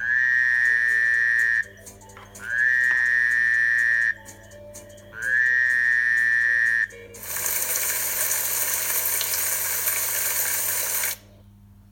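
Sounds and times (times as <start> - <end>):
loud even hiss: 7.2 - 11.2.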